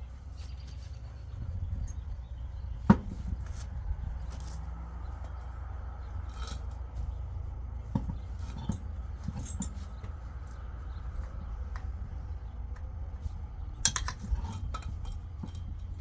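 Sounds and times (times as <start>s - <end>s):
steady low rumble: 0.0s - 16.0s
metallic clicks and knocks: 7.9s - 10.2s, 13.8s - 16.0s.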